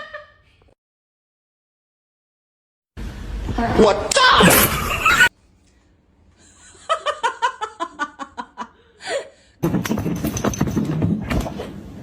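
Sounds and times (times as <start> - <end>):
person laughing: 4.4 - 5.3.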